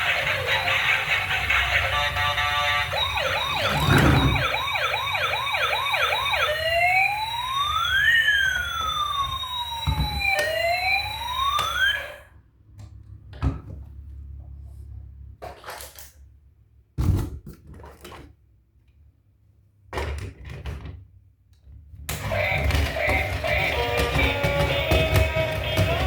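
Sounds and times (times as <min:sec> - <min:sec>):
electronic toy siren wailing: 0:00.0 - 0:12.3, 0:22.1 - 0:26.0.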